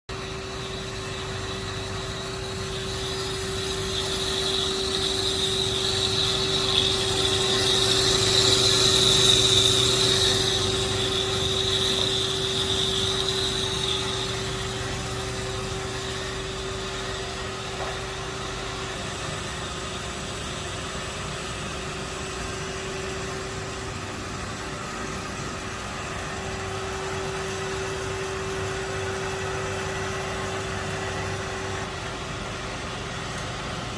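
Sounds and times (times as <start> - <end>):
band saw motor hum: 0.1 - 33.9
high-pitched hissing cutting noise: 0.3 - 18.1.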